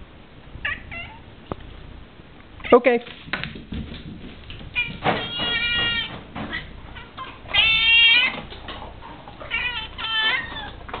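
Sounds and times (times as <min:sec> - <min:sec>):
cat meowing: 0:00.6 - 0:01.2, 0:04.7 - 0:08.5, 0:09.4 - 0:10.9.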